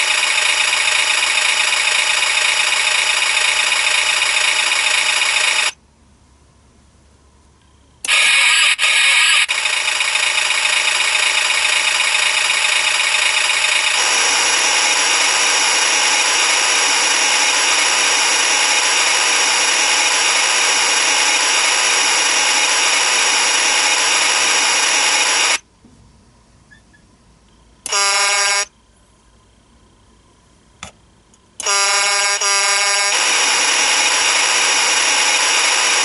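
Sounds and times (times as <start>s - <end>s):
synthesized truck engine: 0.0s - 5.8s, 8.0s - 25.6s, 31.7s - 36.0s.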